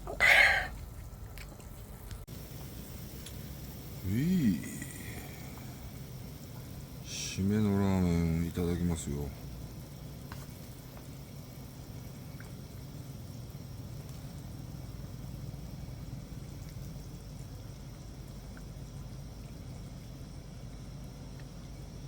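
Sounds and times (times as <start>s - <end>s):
broth bubbling in a pot: 0.0s - 22.0s
steady low hum: 0.0s - 22.0s.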